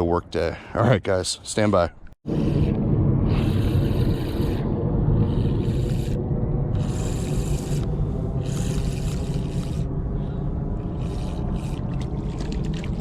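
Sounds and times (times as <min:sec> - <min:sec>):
wind rumble: 0:02.0 - 0:13.0
moving tidal water: 0:10.6 - 0:13.0.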